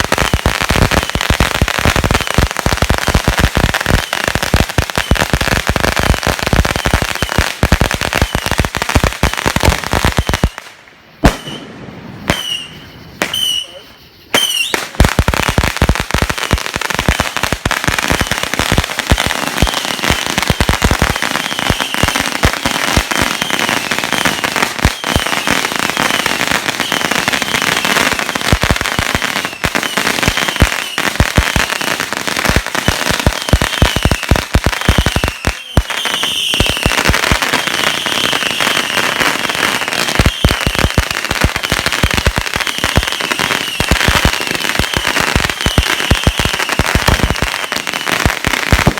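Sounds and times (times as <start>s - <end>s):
firecrackers crackling: 0.0s - 48.9s
high chirping tone: 11.2s - 14.8s.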